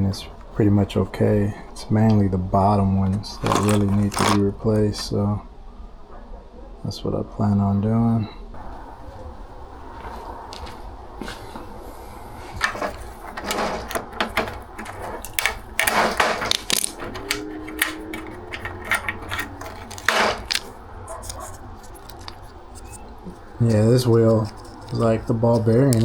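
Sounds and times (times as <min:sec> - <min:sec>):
hardware clicking and rattling: 0:03.0 - 0:05.2, 0:12.4 - 0:26.0.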